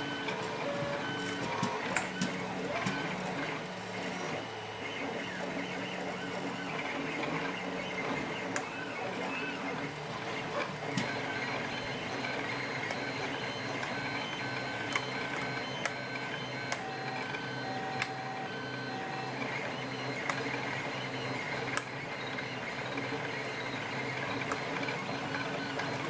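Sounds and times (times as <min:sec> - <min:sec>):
mechanical hum: 0:00.0 - 0:26.0
printer motors stepping tones: 0:00.0 - 0:26.0.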